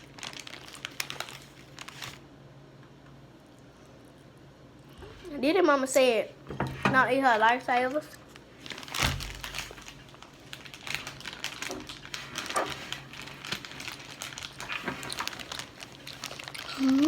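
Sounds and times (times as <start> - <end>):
light crinkling: 7.2 - 17.0
chewing and mouth noises: 14.5 - 17.0.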